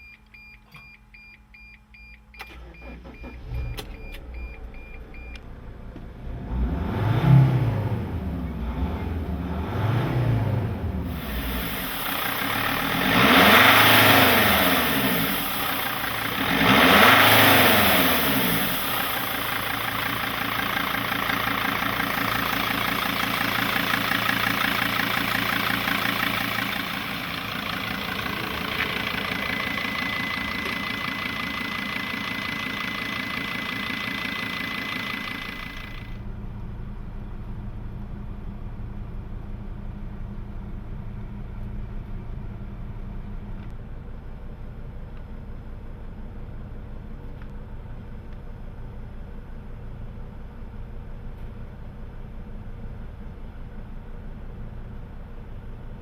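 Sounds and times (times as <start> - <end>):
diesel engine running: 2.5 - 44.9.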